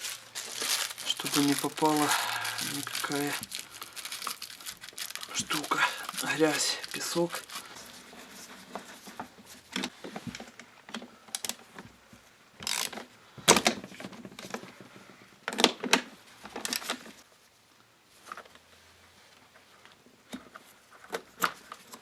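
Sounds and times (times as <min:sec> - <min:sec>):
rustling: 0:00.0 - 0:10.2.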